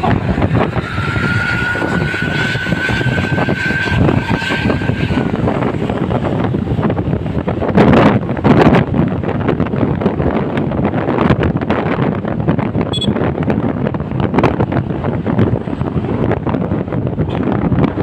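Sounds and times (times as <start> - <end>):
thin high whine: 0.0 - 6.5
passing bus engine: 0.0 - 9.5
loud surges of noise: 0.0 - 18.0.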